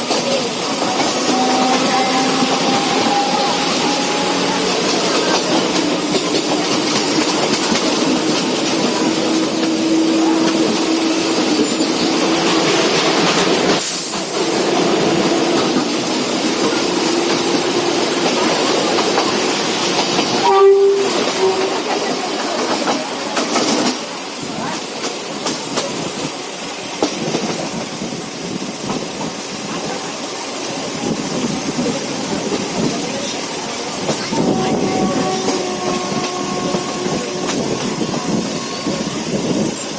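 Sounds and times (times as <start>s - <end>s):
train rumbling with wheel clatter: 0.0s - 39.9s
train horn blast: 0.7s - 13.2s, 15.1s - 22.2s, 34.2s - 39.6s.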